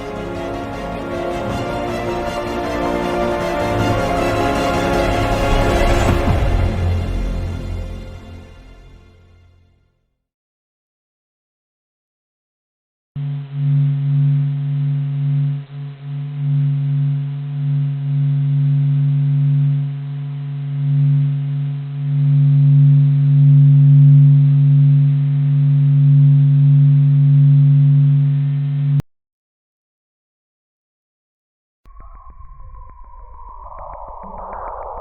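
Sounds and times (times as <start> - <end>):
steady low drone: 0.0 - 9.5, 16.3 - 28.5, 31.9 - 35.0.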